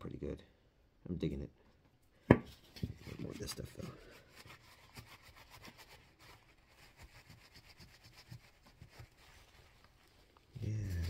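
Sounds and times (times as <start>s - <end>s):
razor being wiped by hand: 3.0s - 11.0s.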